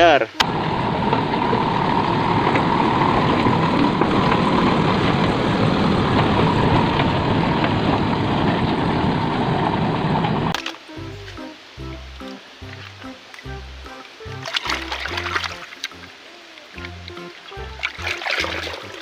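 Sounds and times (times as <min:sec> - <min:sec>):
heavy vehicle engine idling: 0:00.4 - 0:12.2.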